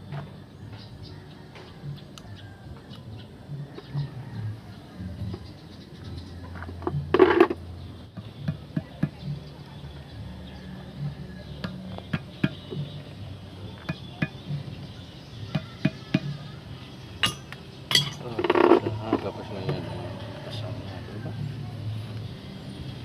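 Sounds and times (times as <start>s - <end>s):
hand tools clinking on metal: 17.2s - 19.2s.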